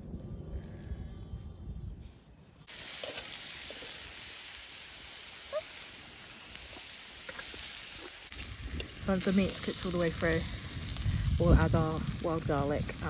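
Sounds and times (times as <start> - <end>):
low rumble: 0.0 - 2.7, 8.4 - 13.0
meat frying sizzle: 2.7 - 13.0.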